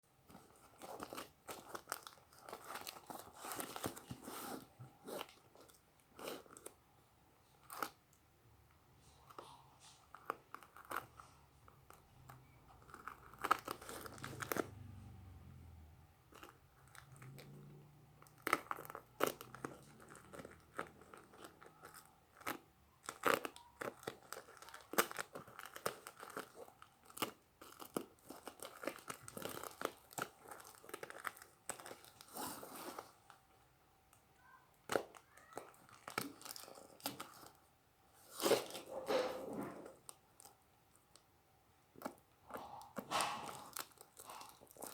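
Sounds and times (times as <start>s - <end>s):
packaging tearing and crinkling: 0.5s - 6.7s, 12.8s - 14.8s, 18.2s - 33.2s, 34.9s - 37.6s, 42.9s - 44.9s.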